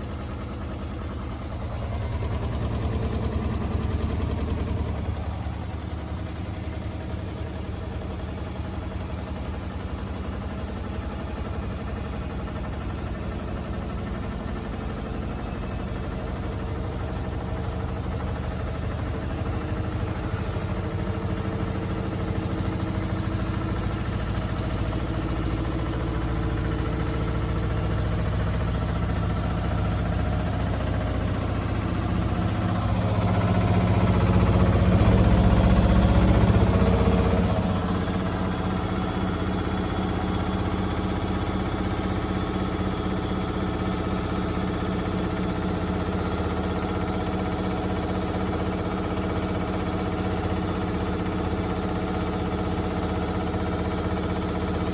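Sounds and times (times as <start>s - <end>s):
low rumbling vibration: 0.0s - 47.3s
washing machine spin whine: 0.0s - 54.9s.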